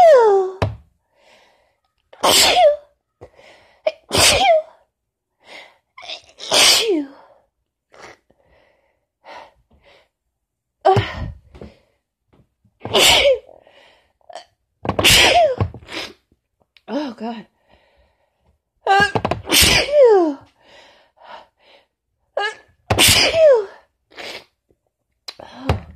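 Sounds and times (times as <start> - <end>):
quick breaths: 1.1 - 1.9
woman sneezing: 2.2 - 2.9, 3.9 - 4.7, 6.4 - 7.1, 12.8 - 13.5, 15.0 - 16.1, 19.5 - 20.2, 22.9 - 24.5.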